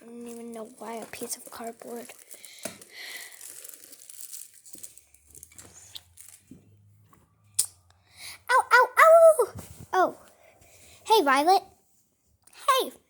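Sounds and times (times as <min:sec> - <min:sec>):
cardboard crinkling and rustling: 0:00.0 - 0:06.8.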